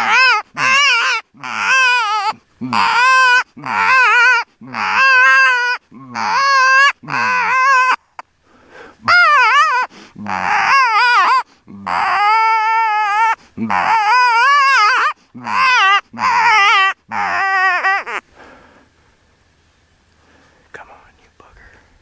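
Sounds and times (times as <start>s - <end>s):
predator call wailing cries: 0.0s - 8.2s, 9.0s - 18.2s.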